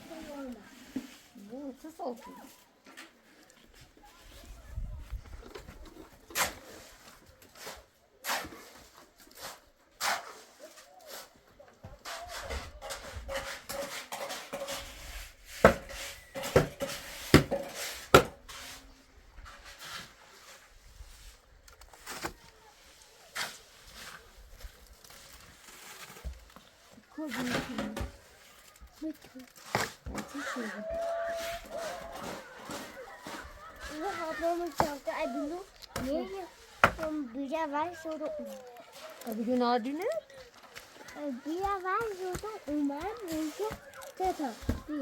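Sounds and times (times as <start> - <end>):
scraping and shuffling: 0.0 - 45.0
hard objects knocking together: 15.7 - 18.4.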